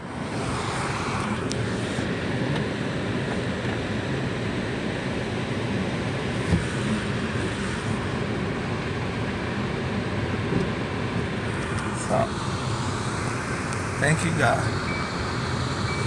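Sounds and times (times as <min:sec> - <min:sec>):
traffic noise: 0:00.0 - 0:16.0
motor vehicle running close by: 0:11.5 - 0:16.0.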